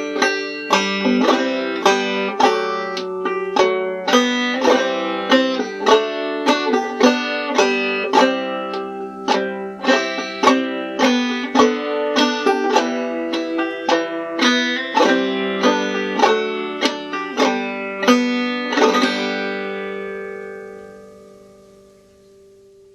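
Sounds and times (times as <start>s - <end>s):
banjo plucked notes: 0.0s - 22.6s.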